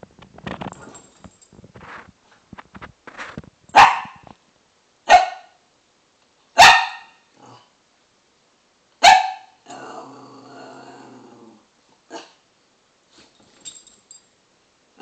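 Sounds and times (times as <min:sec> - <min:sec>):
dog barking: 0:03.8 - 0:04.2, 0:05.1 - 0:05.6, 0:06.6 - 0:07.2, 0:09.0 - 0:09.6.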